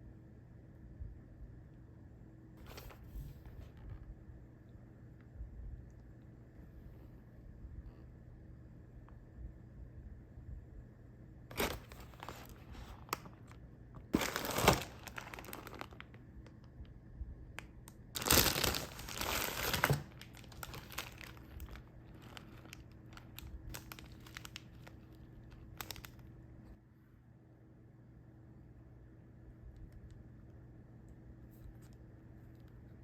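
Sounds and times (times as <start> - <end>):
packaging crinkling and tearing: 11.5 - 16.3, 18.2 - 26.3
small crackles and clicks: 17.6 - 26.3.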